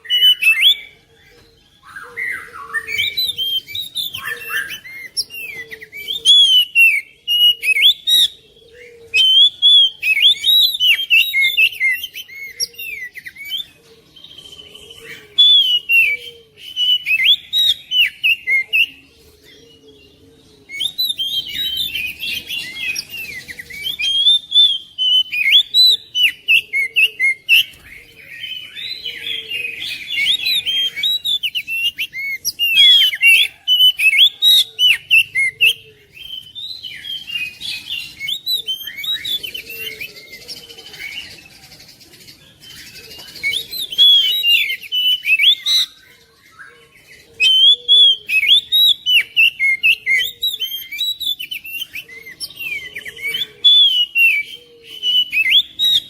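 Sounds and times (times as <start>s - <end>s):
magpie-robin singing: 0.0s - 56.0s.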